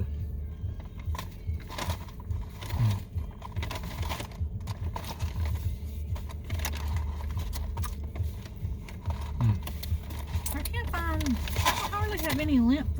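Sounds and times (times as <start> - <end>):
low steady hum: 0.0 - 12.9
paper packaging crackling: 0.8 - 12.9
person chewing: 9.1 - 10.0.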